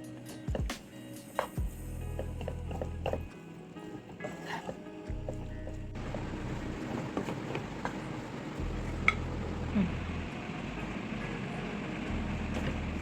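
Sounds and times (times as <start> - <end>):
low hum: 5.1 - 13.0.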